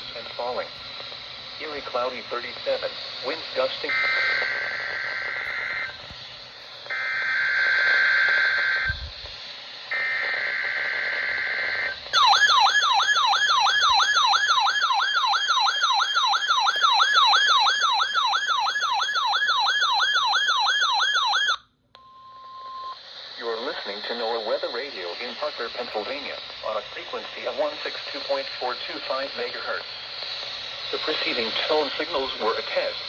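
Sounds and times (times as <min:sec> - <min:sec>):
warbling alarm tone: 0:10.0 - 0:21.6.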